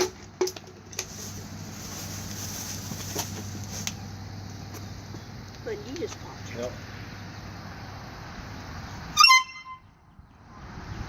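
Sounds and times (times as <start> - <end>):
muffled air horn drone under water: 9.2 - 10.0.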